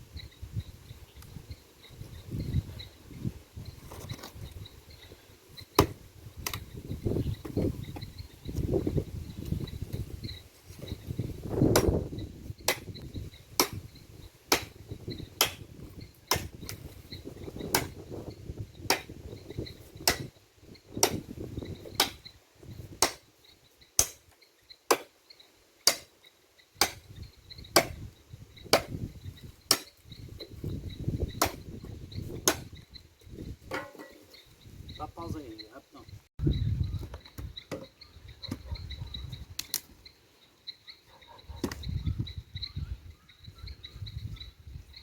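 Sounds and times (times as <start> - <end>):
faint high insect chirping: 0.0 - 16.3, 17.0 - 33.6.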